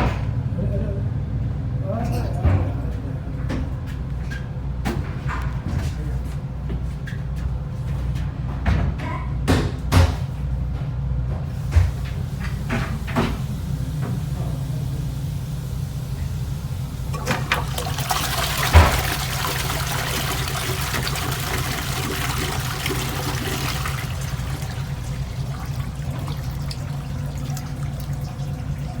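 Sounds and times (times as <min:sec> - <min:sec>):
toilet flush mechanism clicks: 0:11.6 - 0:29.0
water rushing into toilet bowl: 0:12.0 - 0:29.0.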